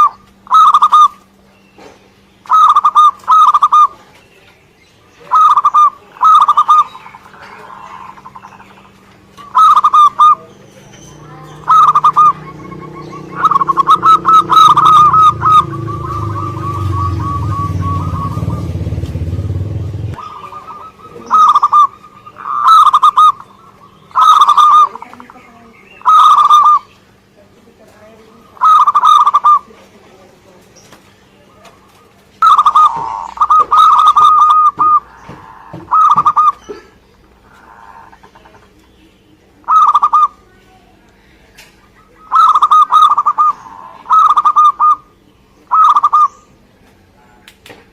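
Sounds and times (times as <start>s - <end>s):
dove cooing: 0.0s - 1.2s, 2.4s - 4.1s, 5.2s - 26.9s, 28.4s - 29.9s, 31.4s - 38.8s, 39.6s - 40.6s, 41.8s - 46.6s
low rumble: 11.1s - 20.2s.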